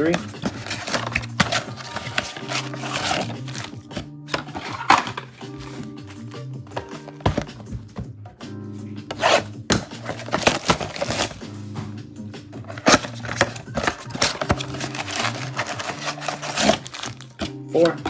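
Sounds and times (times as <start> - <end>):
packaging ripping and rustling: 0.0 - 5.8, 9.1 - 11.4, 12.7 - 17.5
background music: 0.0 - 18.0.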